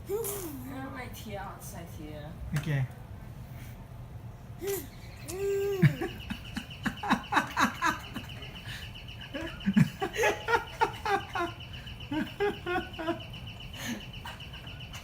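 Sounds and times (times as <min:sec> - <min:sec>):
steady high tone: 0:05.0 - 0:15.0.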